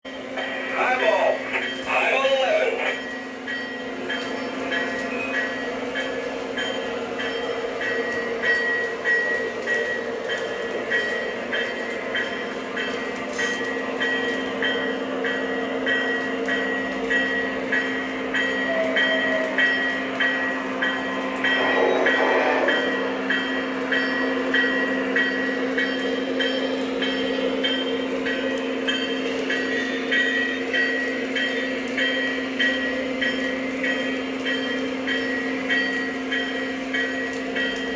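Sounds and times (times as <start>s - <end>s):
model train humming on track: 0.1s - 37.9s
light clicking of train wheels: 2.9s - 37.9s.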